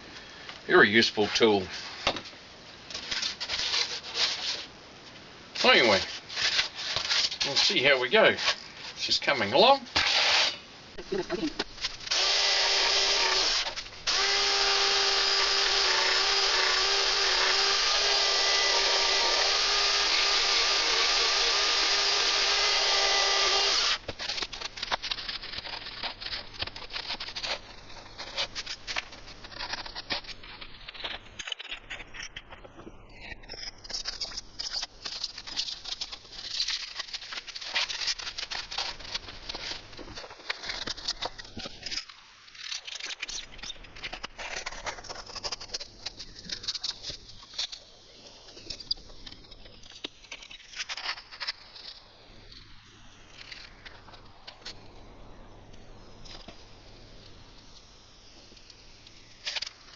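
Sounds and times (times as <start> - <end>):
electric power file running: 12.1 - 24.1.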